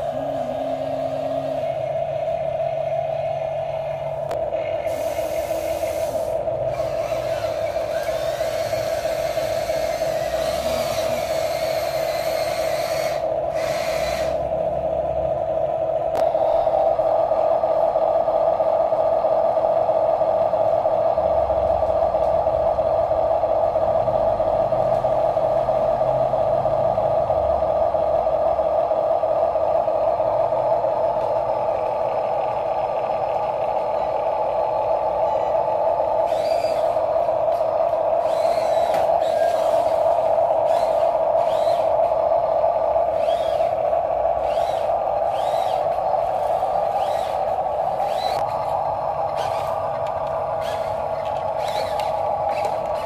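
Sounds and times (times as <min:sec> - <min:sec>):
toy gear motors whining: 0:04.9 - 0:14.5, 0:35.2 - 0:53.0.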